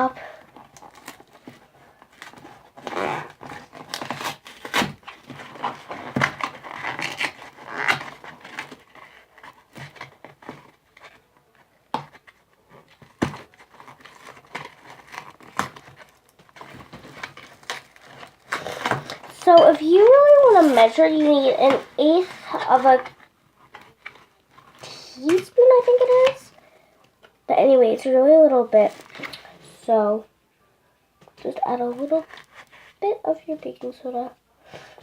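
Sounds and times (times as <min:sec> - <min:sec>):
paper package tearing and crinkling: 0:00.0 - 0:11.3, 0:12.2 - 0:26.5.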